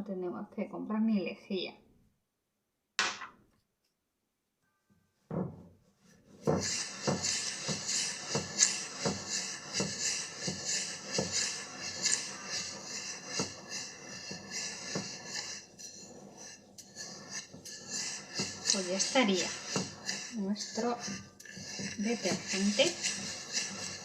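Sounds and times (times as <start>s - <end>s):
knock: 5.3s - 5.7s
utensil scraping container: 6.4s - 24.0s.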